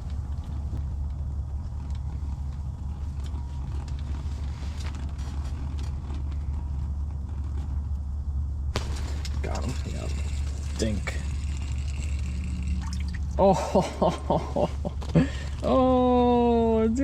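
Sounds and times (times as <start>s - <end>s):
faint clicks and creaks: 0.0s - 8.1s, 8.8s - 13.0s
steady low hum: 0.0s - 17.0s.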